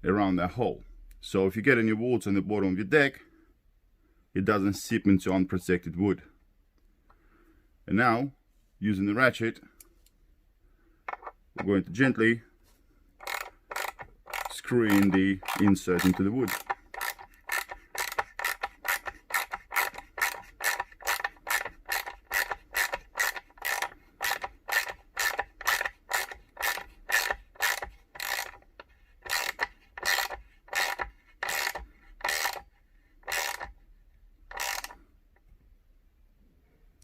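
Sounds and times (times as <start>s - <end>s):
ratchet wrench clicking: 13.2s - 33.8s, 34.5s - 35.0s.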